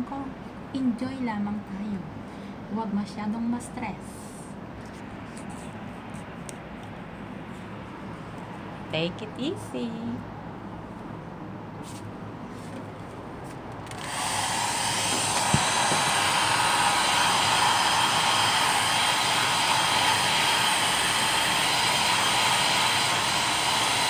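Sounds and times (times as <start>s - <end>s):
hair dryer blowing: 13.8s - 24.0s.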